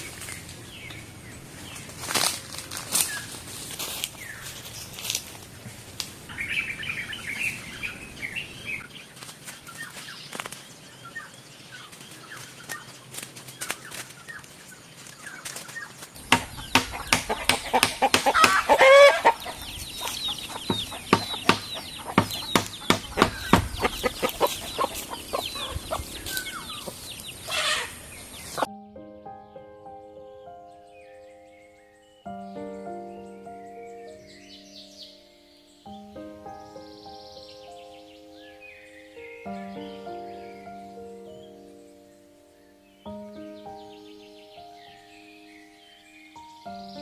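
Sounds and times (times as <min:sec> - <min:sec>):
chickens clucking: 0:16.2 - 0:28.7
chicken drawn-out call: 0:16.9 - 0:22.9, 0:23.6 - 0:28.7.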